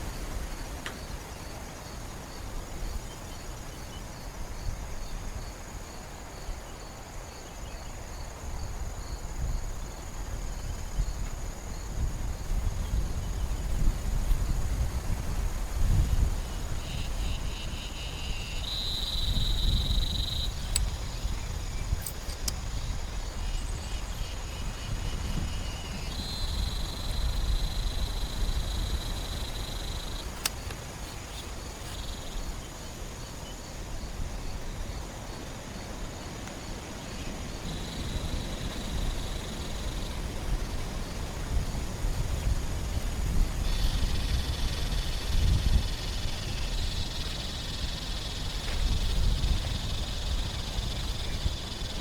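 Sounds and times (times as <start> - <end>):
insects trilling: 0.0 - 52.0
sharp ticks: 18.7 - 21.0, 28.8 - 30.8.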